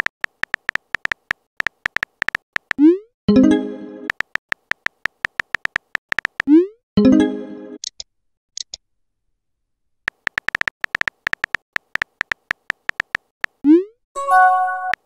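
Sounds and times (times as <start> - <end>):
phone keyboard typing clicks: 0.0 - 2.8, 4.1 - 6.5, 10.1 - 13.6
chiming notification tone: 3.3 - 4.1, 14.2 - 15.0.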